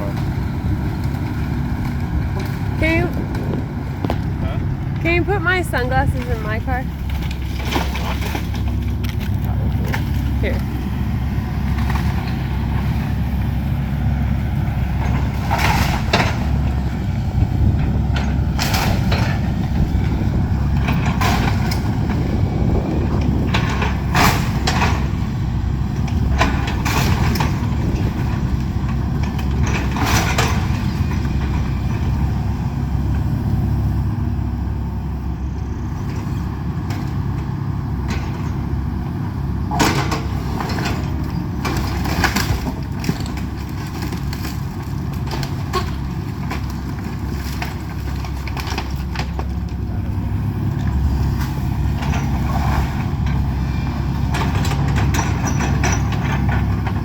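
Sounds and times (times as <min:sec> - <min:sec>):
excavator diesel engine running: 0:00.0 - 0:57.0
building material cracking and crunching: 0:06.2 - 0:10.8, 0:40.0 - 0:50.6.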